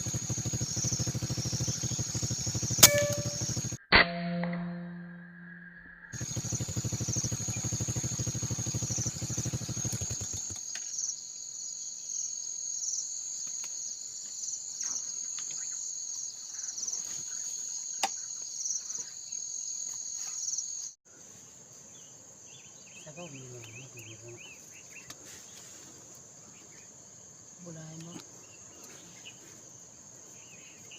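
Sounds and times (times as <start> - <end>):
insects chirring: 0.0 - 3.8, 5.1 - 30.9
fast low pulsing: 0.0 - 10.6
sharp click: 2.8 - 4.6.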